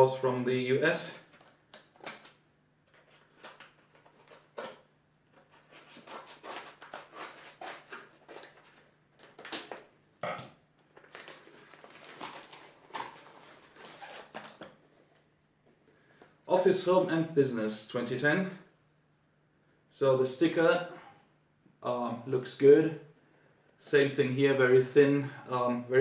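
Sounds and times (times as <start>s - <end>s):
packaging crinkling: 1.3s - 4.8s, 5.4s - 10.0s, 10.8s - 15.2s.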